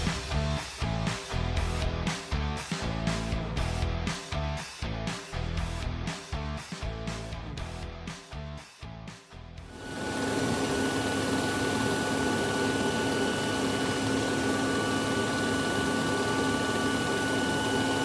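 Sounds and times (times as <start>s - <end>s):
machine hum: 9.7s - 18.0s.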